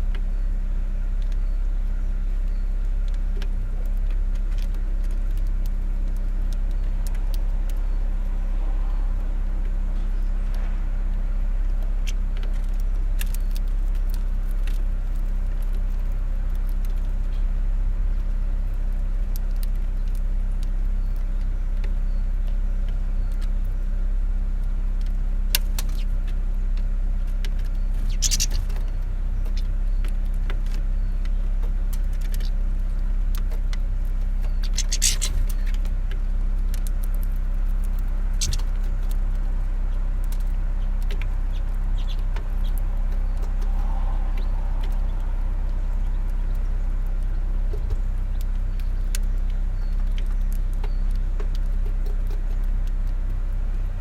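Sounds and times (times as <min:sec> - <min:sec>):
low traffic rumble: 0:00.0 - 0:54.0
finches twittering: 0:27.5 - 0:52.9.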